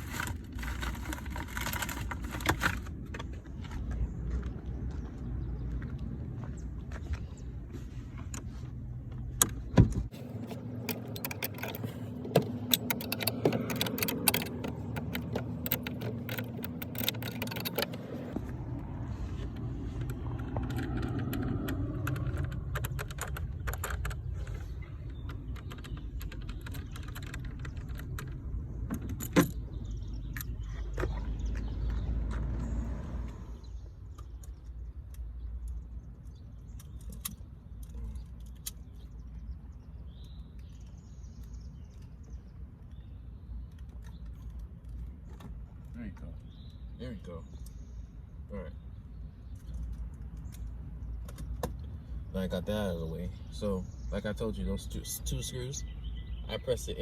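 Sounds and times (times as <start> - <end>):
low rumble: 17.9 - 33.9.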